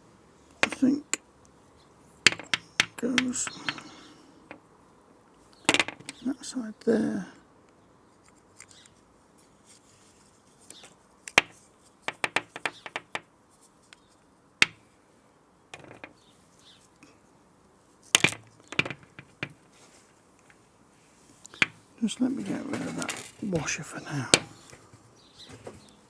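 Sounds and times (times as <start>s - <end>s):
parts knocking: 2.3s - 4.6s, 15.8s - 16.2s, 18.2s - 19.7s, 21.6s - 24.8s.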